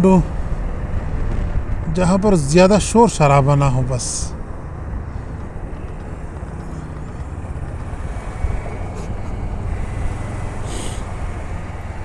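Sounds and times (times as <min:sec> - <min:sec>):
motorcycle engine drone: 0:04.0 - 0:12.0
wind rumbling on microphone: 0:04.3 - 0:12.0.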